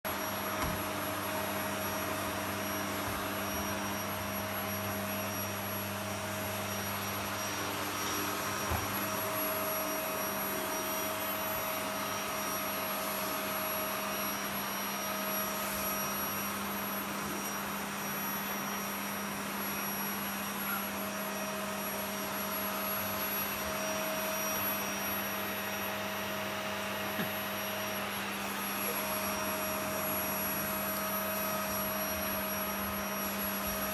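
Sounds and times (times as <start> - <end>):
vacuum cleaner running: 0.1 - 33.9.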